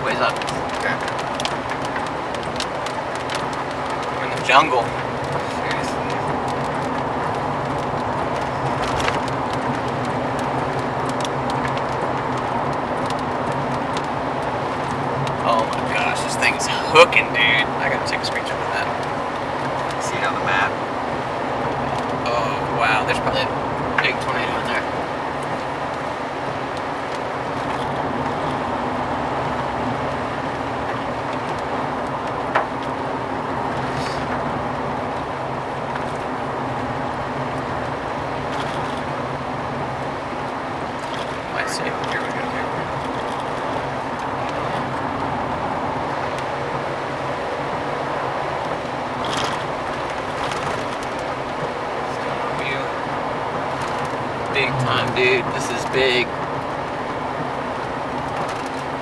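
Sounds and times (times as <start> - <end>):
car cabin road noise: 0.0 - 59.0
light ticks: 0.3 - 17.1.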